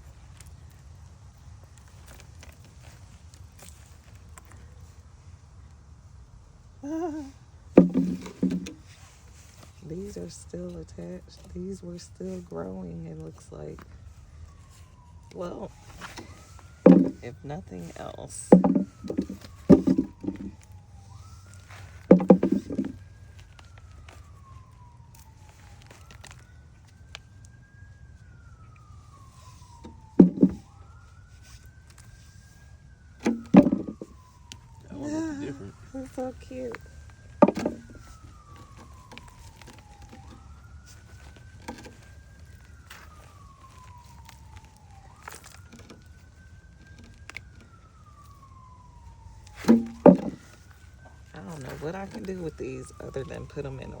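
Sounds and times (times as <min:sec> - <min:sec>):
handling clicks and rustles: 0:00.0 - 0:06.0, 0:07.8 - 0:54.0
faint siren wailing: 0:00.0 - 0:54.0
sharp knocks: 0:07.8 - 0:08.8, 0:16.9 - 0:17.3, 0:18.6 - 0:20.5, 0:22.1 - 0:23.0, 0:30.2 - 0:30.6, 0:33.2 - 0:34.1, 0:37.4 - 0:38.0, 0:49.6 - 0:50.4
person's voice: 0:34.9 - 0:36.7.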